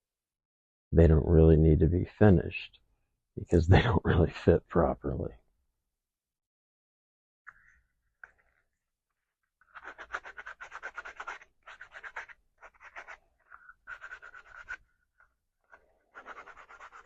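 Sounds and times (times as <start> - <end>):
sandpaper scratching plastic: 9.6 - 17.0.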